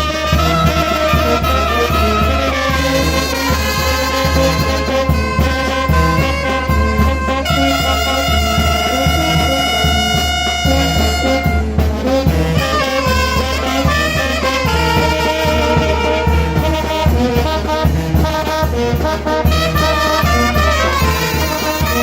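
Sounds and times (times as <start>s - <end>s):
brass band playing: 0.0s - 22.0s.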